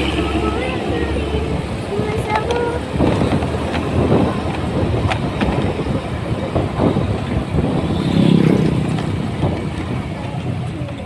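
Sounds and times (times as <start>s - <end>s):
bus exhaust growl: 0.0s - 11.0s.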